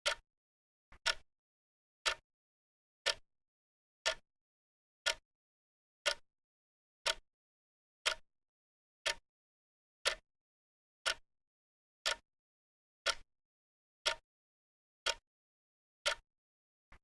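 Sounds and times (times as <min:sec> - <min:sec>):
clock ticking: 0:00.0 - 0:00.2, 0:01.0 - 0:01.2, 0:02.0 - 0:02.2, 0:07.0 - 0:07.2, 0:08.0 - 0:08.2, 0:09.0 - 0:09.2, 0:10.0 - 0:10.2, 0:11.0 - 0:11.2, 0:12.0 - 0:12.2, 0:14.0 - 0:14.2, 0:15.0 - 0:15.2, 0:16.0 - 0:16.2.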